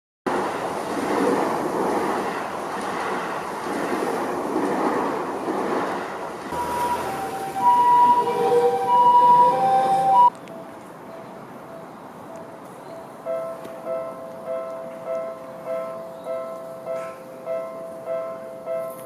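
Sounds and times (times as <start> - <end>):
train rushing: 0.3 - 12.7
two-pitch electronic warning tone: 6.6 - 10.3.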